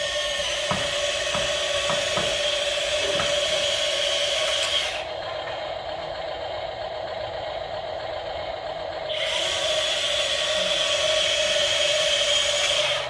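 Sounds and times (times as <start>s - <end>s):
small electric motor whining: 0.0s - 5.2s, 9.1s - 13.0s.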